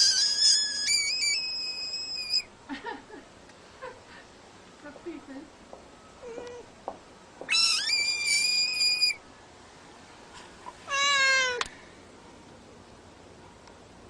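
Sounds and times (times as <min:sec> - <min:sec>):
frog distress screams: 0:00.0 - 0:02.5, 0:07.5 - 0:09.2.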